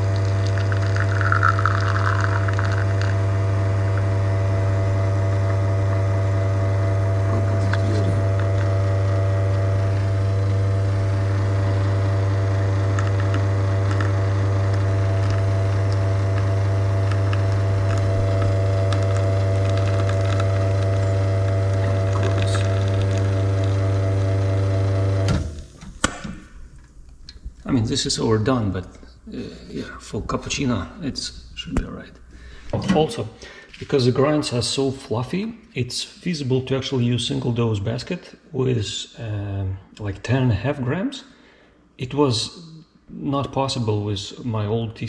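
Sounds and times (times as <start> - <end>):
espresso machine pump humming: 0.0 - 25.6.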